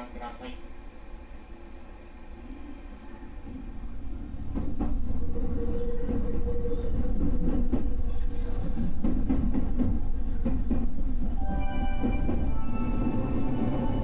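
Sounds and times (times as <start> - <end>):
electric train rumbling on rails: 0.0 - 14.0
clacks over rail joints: 7.1 - 11.4.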